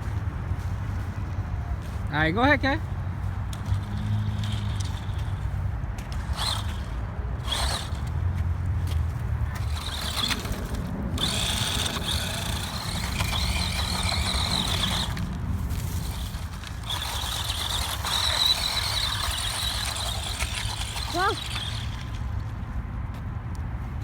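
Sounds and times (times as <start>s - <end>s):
rc car motor whining: 3.4s - 22.6s.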